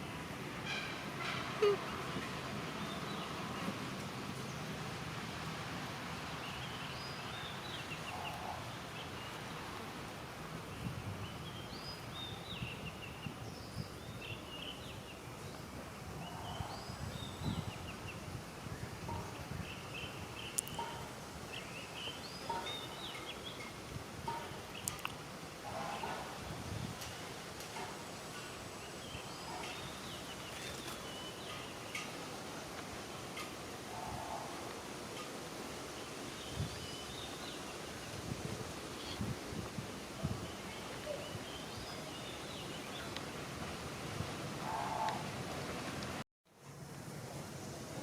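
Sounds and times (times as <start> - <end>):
outdoor background noise: 0.0 - 48.0
animals chirping: 1.5 - 2.0.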